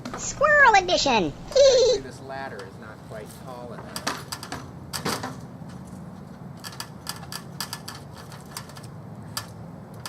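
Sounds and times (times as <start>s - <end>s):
hard objects clicking and knocking: 6.6s - 10.0s.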